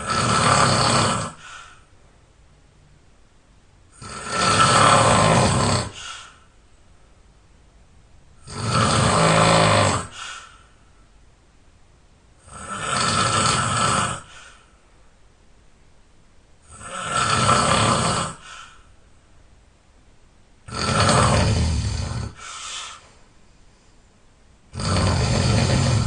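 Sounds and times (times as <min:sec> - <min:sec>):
person snoring loudly: 0:00.0 - 0:01.6, 0:03.9 - 0:06.4, 0:08.4 - 0:10.5, 0:12.4 - 0:14.6, 0:16.6 - 0:18.8, 0:20.7 - 0:23.0, 0:24.7 - 0:26.0
quiet breathing: 0:00.0 - 0:02.2, 0:03.9 - 0:07.3, 0:08.4 - 0:11.3, 0:12.4 - 0:15.2, 0:16.6 - 0:19.3, 0:20.7 - 0:26.0.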